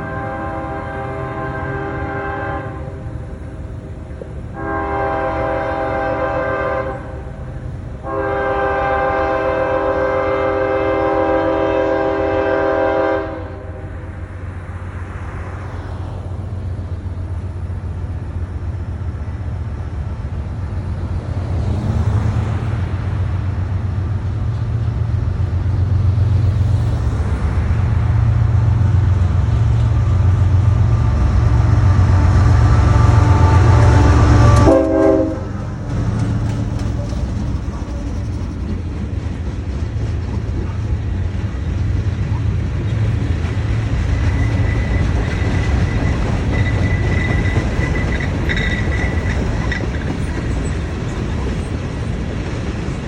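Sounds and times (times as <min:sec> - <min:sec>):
train air horn: 0:00.0 - 0:03.1, 0:04.5 - 0:07.4, 0:08.0 - 0:13.9, 0:31.9 - 0:35.8
freight cars rumbling and clicking: 0:00.0 - 0:12.7, 0:13.4 - 0:53.0
diesel locomotive engine hum: 0:00.0 - 0:53.0.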